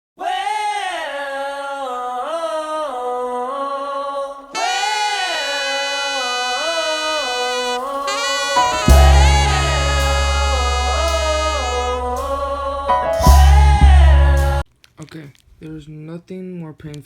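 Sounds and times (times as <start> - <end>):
melody of sliding held notes: 6.5 - 14.5.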